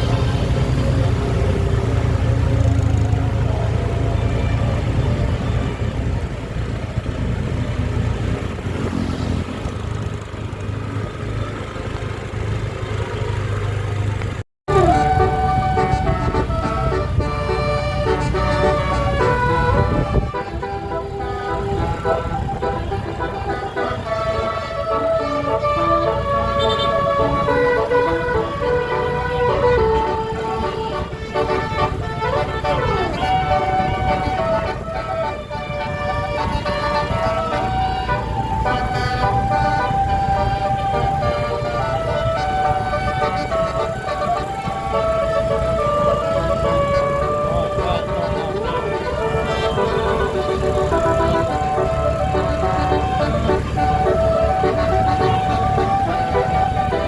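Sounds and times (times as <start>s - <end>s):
bus engine rumbling: 0.0s - 57.0s
traffic rumble: 0.0s - 57.0s
musical air horns playing tune: 14.7s - 57.0s.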